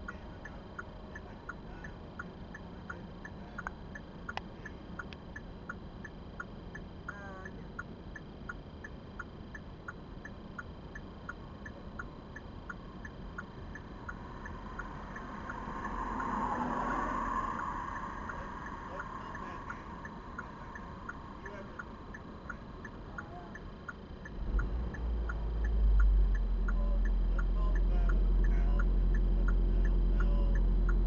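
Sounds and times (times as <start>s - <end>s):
low cabin hum: 0.0s - 31.0s
turn signal clicking: 0.0s - 31.0s
rushing noise: 13.9s - 21.0s.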